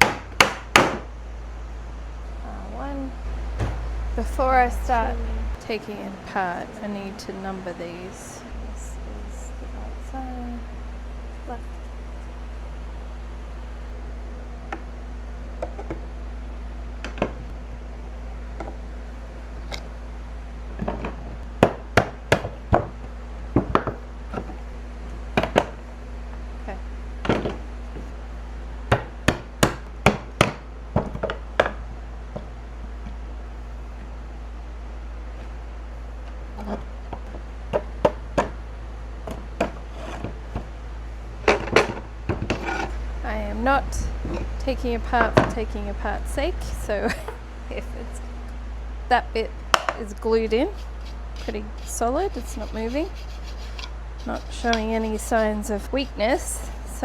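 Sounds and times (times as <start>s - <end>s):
steady low hum: 0.0s - 57.0s
wooden knocks and clunks: 3.6s - 4.0s.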